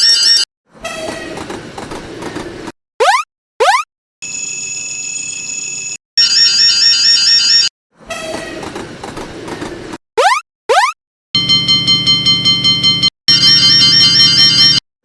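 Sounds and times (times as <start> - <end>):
train running noise: 0.8 - 2.8, 8.0 - 10.0.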